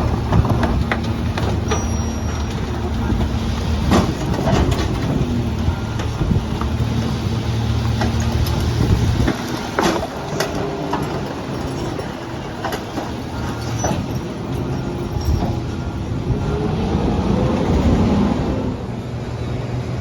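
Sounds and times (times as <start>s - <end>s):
garbage truck engine humming: 0.0s - 20.0s
sharp knocks and clanks: 0.3s - 5.3s.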